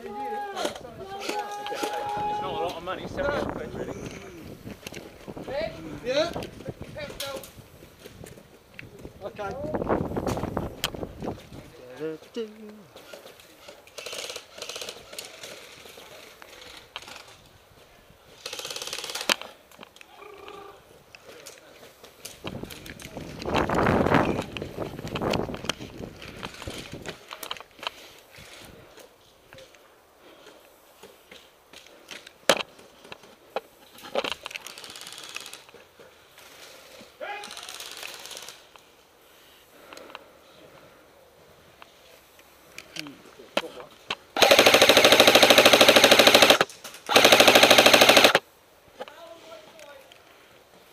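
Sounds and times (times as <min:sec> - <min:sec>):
airsoft rifle ratcheting clicks: 0:13.9 - 0:15.5, 0:18.4 - 0:19.5, 0:34.4 - 0:35.8, 0:37.4 - 0:38.8, 0:44.4 - 0:48.4
fast mechanical rattle: 0:44.4 - 0:48.4.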